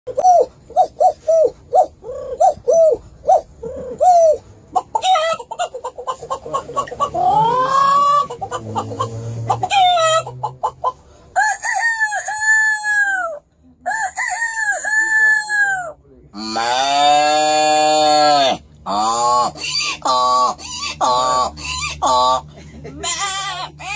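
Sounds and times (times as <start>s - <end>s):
chickens clucking: 0.1s - 14.0s, 18.9s - 23.9s
rooster crowing: 11.3s - 15.7s.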